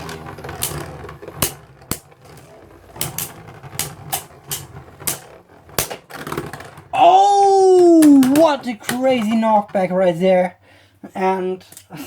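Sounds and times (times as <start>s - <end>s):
faint whir of spinning: 0.0s - 5.8s
spinning tops clacking: 0.0s - 10.3s.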